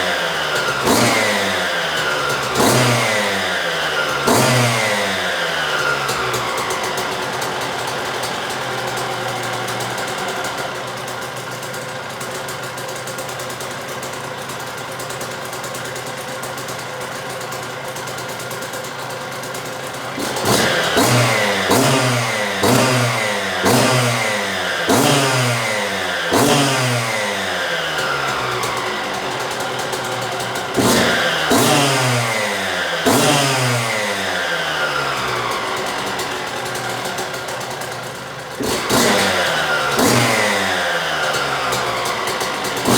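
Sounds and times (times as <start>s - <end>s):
two-stroke engine idling and revving: 0.0s - 42.9s.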